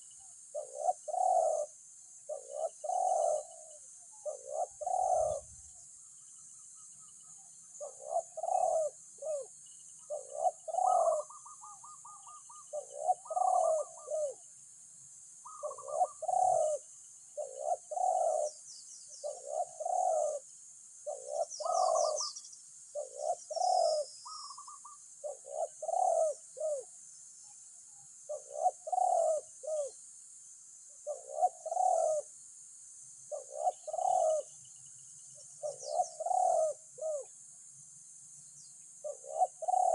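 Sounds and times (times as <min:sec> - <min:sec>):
doves cooing: 0:00.0 - 0:05.8, 0:07.7 - 0:14.5, 0:15.4 - 0:27.0, 0:28.3 - 0:30.0, 0:31.0 - 0:32.3, 0:33.3 - 0:34.6, 0:35.6 - 0:37.4, 0:39.0 - 0:39.9.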